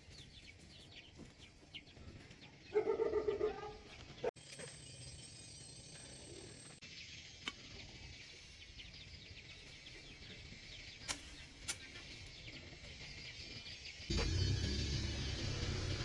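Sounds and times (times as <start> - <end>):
small birds chirping: 0.0 - 16.0
low rumble: 14.1 - 16.0.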